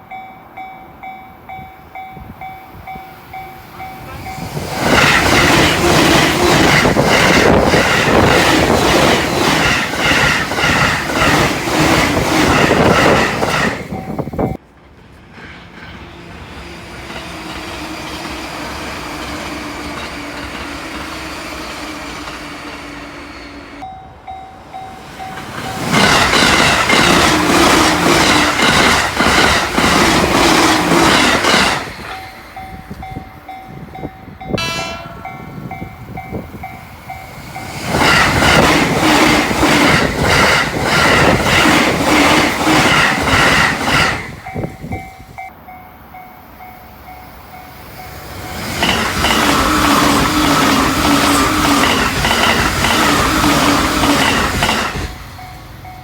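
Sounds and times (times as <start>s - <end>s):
level-crossing warning bell: 0.0s - 14.6s, 21.7s - 56.0s
trains rushing past: 0.0s - 56.0s
wheels clattering over rail joints: 24.9s - 33.1s, 48.3s - 55.9s.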